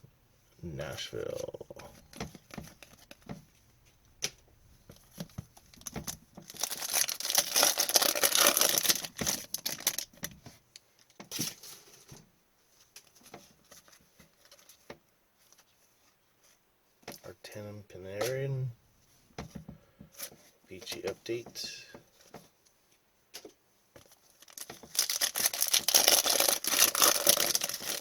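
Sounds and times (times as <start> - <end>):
foil wrapper tearing and crinkling: 2.2 - 3.2, 5.6 - 10.4, 24.1 - 28.0.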